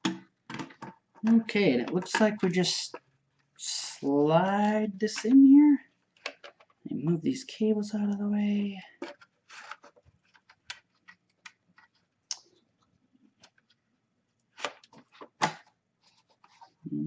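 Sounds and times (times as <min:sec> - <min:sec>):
metal case and cables clicking: 0:06.1 - 0:06.8, 0:09.0 - 0:12.1.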